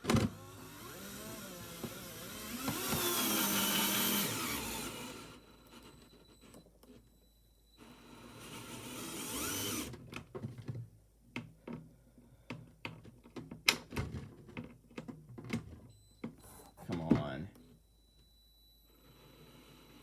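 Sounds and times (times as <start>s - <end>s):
power drill driving screw: 0.0s - 6.3s, 7.8s - 10.0s.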